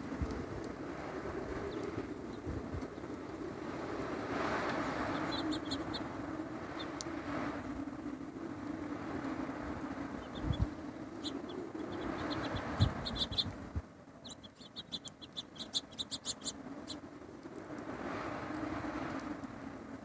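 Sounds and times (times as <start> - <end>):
steady low hum: 0.0 - 20.0
small birds chirping: 1.5 - 3.2, 4.6 - 7.1, 10.0 - 17.1.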